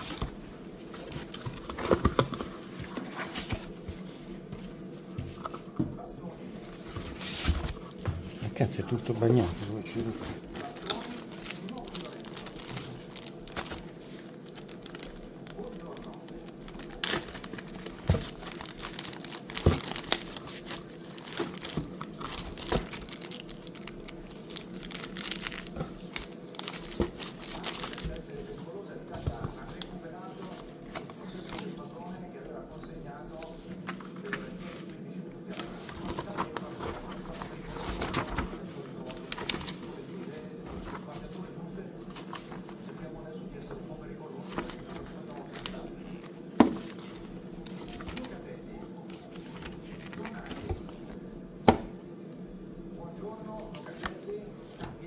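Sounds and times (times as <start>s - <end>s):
plastic wrapping crinkling: 6.5s - 32.1s, 35.6s - 43.1s, 44.4s - 48.5s.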